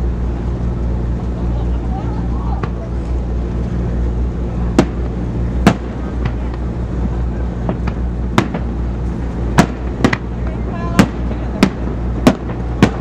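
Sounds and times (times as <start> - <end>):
low rumble: 0.0 - 13.0
fireworks cracks and pops: 4.7 - 13.0.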